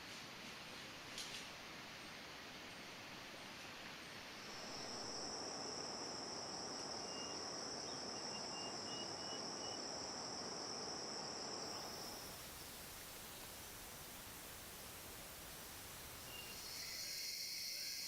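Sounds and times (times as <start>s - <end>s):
background noise: 0.0s - 18.0s
insect trilling: 16.3s - 18.0s.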